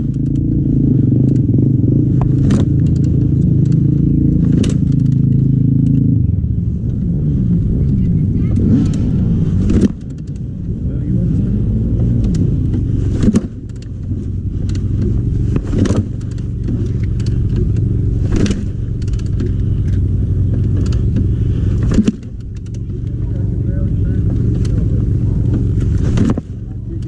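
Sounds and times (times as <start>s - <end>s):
low rumble: 0.0s - 27.0s
motorcycle kick-start knock: 14.6s - 22.9s.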